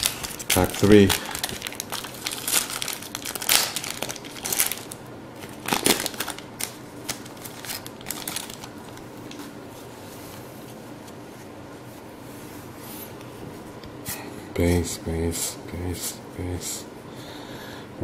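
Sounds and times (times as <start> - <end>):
wrapper crinkling and tearing: 0.0 - 9.4.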